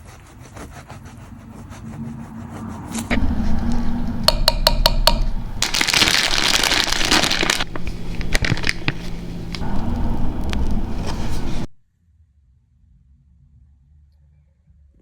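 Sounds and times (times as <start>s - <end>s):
low steady hum: 3.1s - 11.7s
utensil tapping glass bowl: 3.2s - 5.6s.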